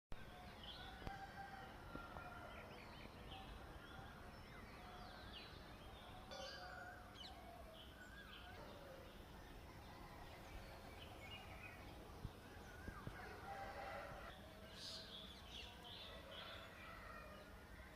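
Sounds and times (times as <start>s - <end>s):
birds chirping and calling: 2.3s - 17.1s.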